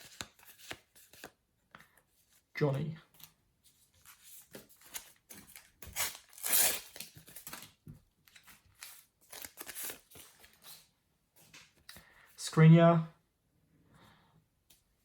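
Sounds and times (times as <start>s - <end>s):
wrapper crinkling and rustling: 4.4s - 10.9s
paper sticker packet tearing: 4.8s - 10.8s.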